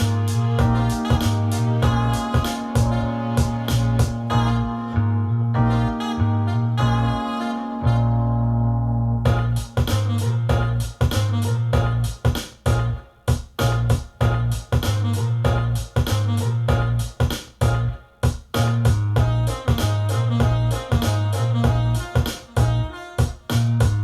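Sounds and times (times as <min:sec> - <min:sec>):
electronic keyboard music: 0:00.0 - 0:24.0.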